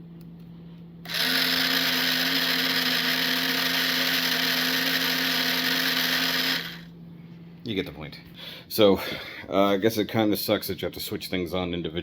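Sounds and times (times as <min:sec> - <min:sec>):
electric whirring with buzzing tone: 0:01.0 - 0:07.1.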